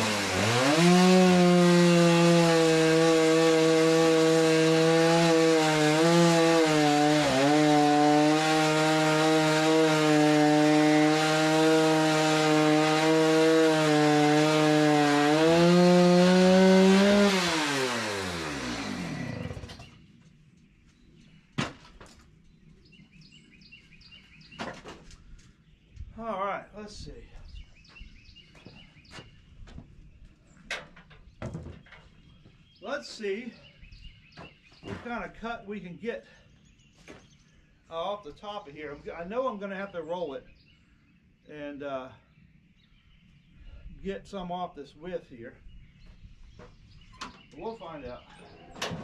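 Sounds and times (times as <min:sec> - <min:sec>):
chainsaw cutting wood: 0:00.0 - 0:19.9.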